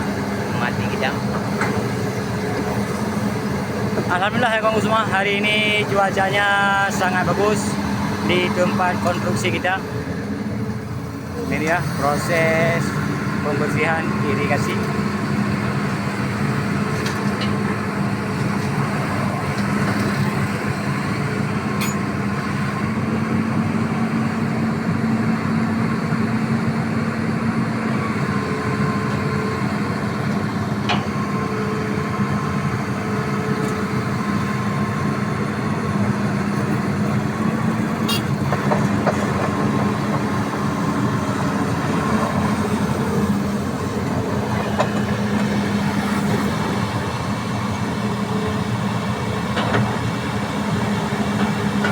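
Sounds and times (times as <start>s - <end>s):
excavator diesel engine running: 0.0s - 51.9s.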